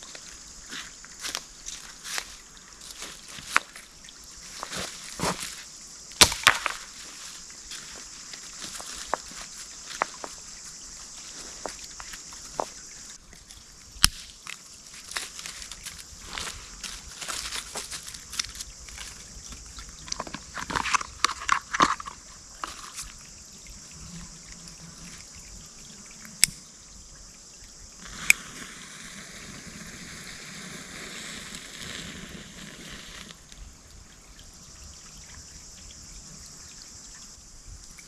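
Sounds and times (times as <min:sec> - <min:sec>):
water pouring: 0:00.0 - 0:37.4
knocks and rustles: 0:04.6 - 0:05.6
sharp click: 0:26.4 - 0:26.6.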